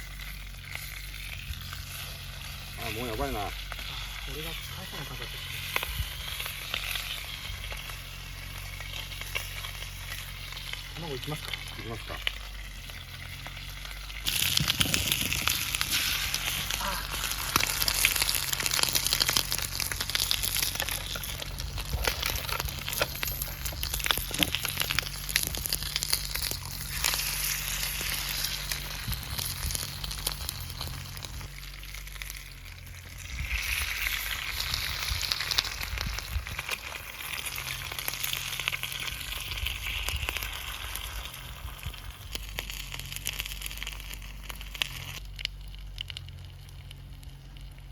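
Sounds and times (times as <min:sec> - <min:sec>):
bacon and eggs sizzling in a pan: 0:00.0 - 0:47.9.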